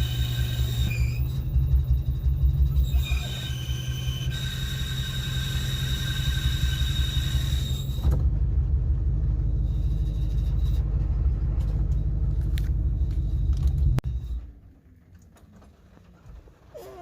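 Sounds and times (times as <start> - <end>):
high-pitched bearing screech: 0.0 - 8.1
car engine idling: 0.0 - 16.8.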